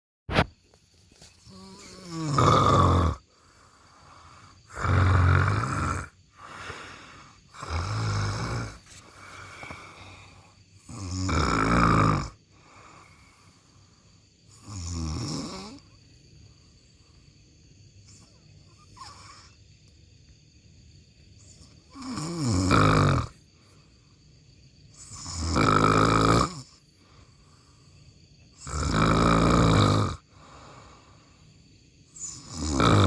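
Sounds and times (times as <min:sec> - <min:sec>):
person snoring loudly: 0:01.4 - 0:13.2, 0:14.5 - 0:15.9, 0:21.9 - 0:23.4, 0:25.0 - 0:26.8, 0:28.6 - 0:31.0, 0:32.2 - 0:33.0
faint breathing: 0:03.1 - 0:05.0, 0:06.0 - 0:10.8, 0:12.3 - 0:14.5, 0:15.8 - 0:19.6, 0:26.8 - 0:28.4, 0:30.2 - 0:32.4.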